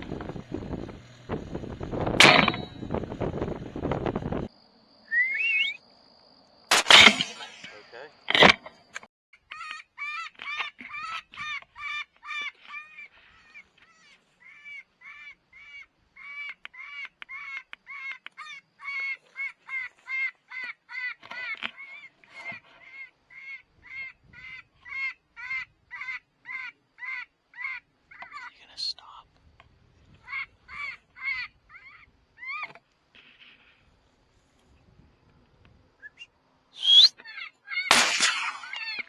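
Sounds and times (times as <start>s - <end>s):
bird calling in short notes: 36.8s - 37.9s.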